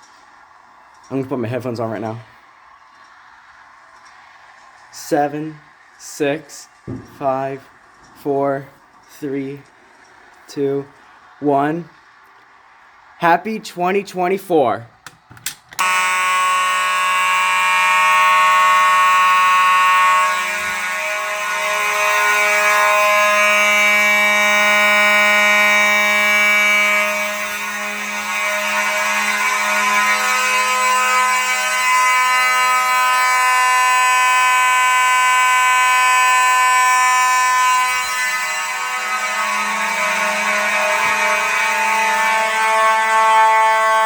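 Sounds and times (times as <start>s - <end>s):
fire alarm horns buzzing: 1.0s - 12.0s, 15.8s - 44.0s.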